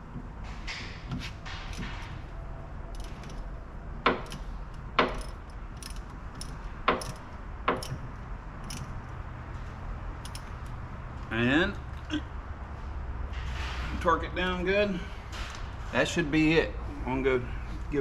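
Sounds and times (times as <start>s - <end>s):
metal tools clinking on steel: 2.8s - 3.6s, 4.2s - 9.2s, 10.1s - 10.8s.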